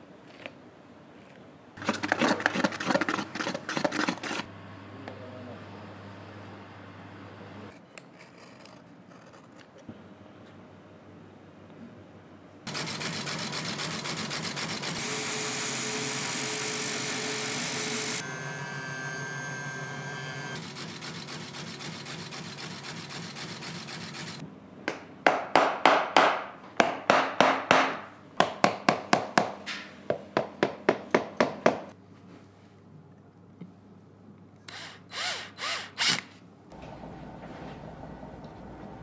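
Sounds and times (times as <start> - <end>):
scraping strokes on shoe sole: 1.8 - 4.5
motorised shoe repair tool running: 12.7 - 24.4.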